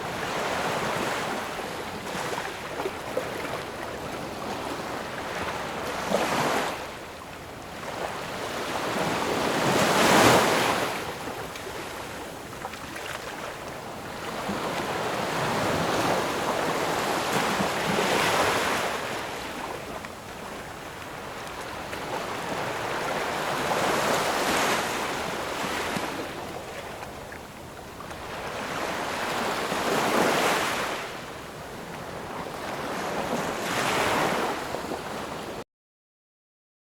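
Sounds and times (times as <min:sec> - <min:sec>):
ocean waves breaking: 0:07.8 - 0:27.2, 0:28.0 - 0:31.2, 0:32.0 - 0:35.5.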